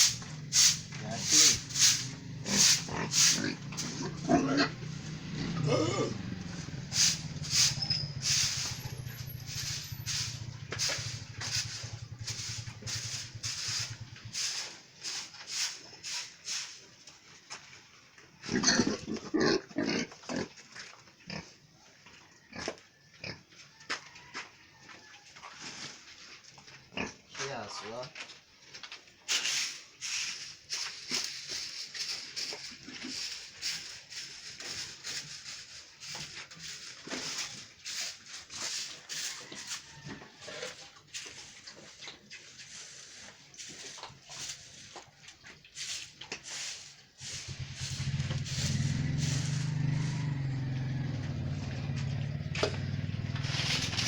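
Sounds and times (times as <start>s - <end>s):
pigs grunting: 0.0s - 13.8s, 18.4s - 21.6s, 26.9s - 27.4s
pigs snuffling and shuffling: 0.0s - 54.0s.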